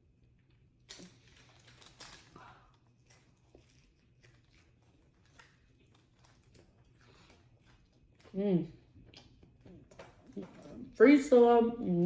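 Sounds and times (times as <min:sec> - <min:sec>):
faint chewing: 0:00.2 - 0:11.0.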